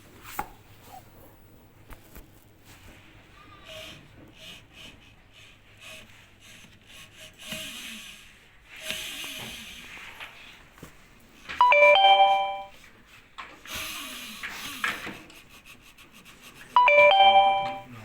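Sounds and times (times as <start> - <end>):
electronic chime: 11.6 - 12.7, 16.8 - 17.9.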